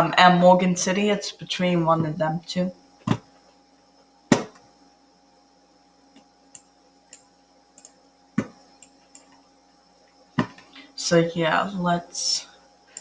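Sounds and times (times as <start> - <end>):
faint electrical hum: 0.0 - 13.0
computer mouse clicking: 6.5 - 9.4.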